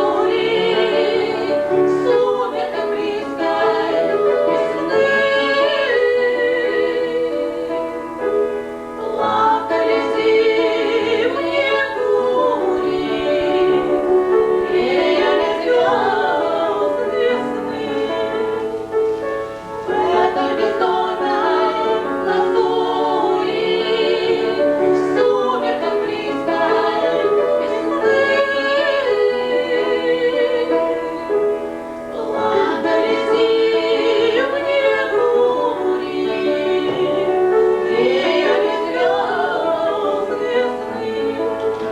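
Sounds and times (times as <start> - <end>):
women singing operatically: 0.0 - 41.9.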